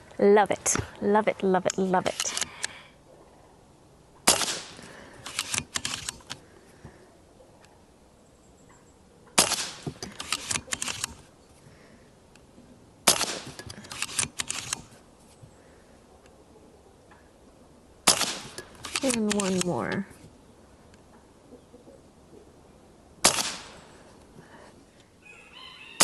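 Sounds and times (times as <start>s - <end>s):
air rifle shots: 4.2s - 6.4s, 9.4s - 11.2s, 13.0s - 14.9s, 18.0s - 19.8s, 23.2s - 23.9s
rifle action clicking: 4.3s - 6.4s, 9.4s - 11.2s, 13.1s - 14.9s, 18.1s - 19.8s.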